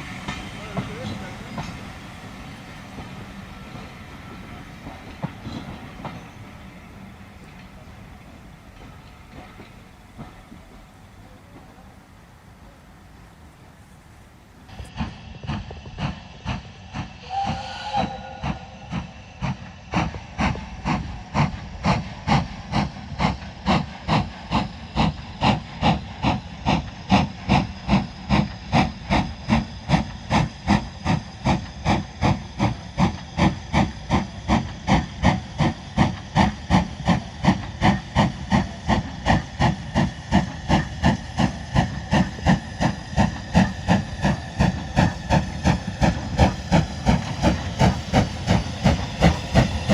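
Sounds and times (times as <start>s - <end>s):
steam locomotive exhaust beats: 0.0s - 49.9s
steam whistle: 17.2s - 18.8s.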